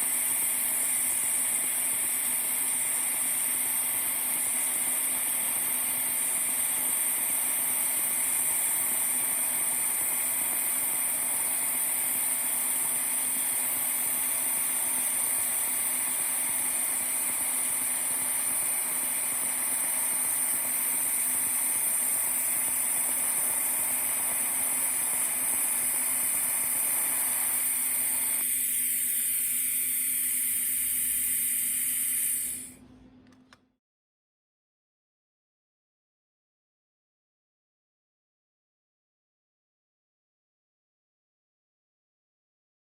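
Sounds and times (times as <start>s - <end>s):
welding arc hissing: 0.0s - 32.8s
welding arc hum: 0.0s - 33.6s.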